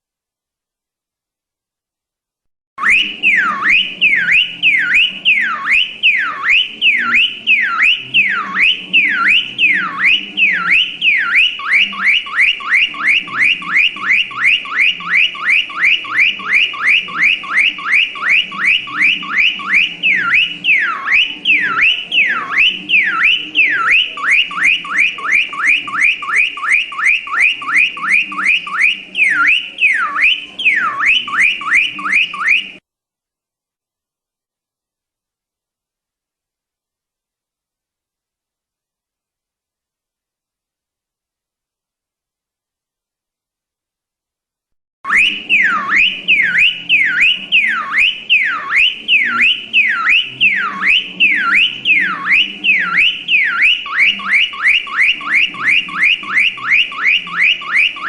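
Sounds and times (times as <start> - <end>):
car alarm siren: 2.8 - 32.8, 45.0 - 58.0.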